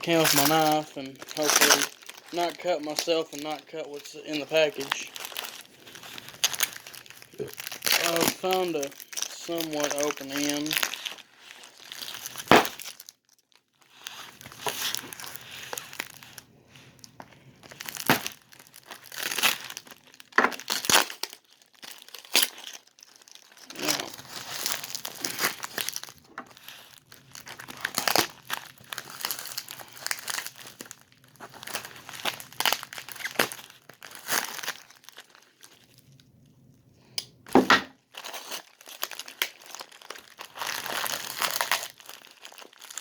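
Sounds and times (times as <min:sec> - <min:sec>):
tape tearing: 0:00.0 - 0:13.1, 0:17.8 - 0:26.9, 0:27.5 - 0:34.9
packaging crinkling: 0:00.0 - 0:36.3, 0:37.0 - 0:43.0.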